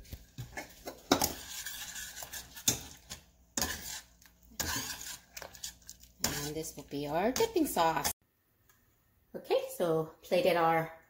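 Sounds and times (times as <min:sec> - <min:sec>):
metal utensil scraping saucepan: 0:00.4 - 0:08.2.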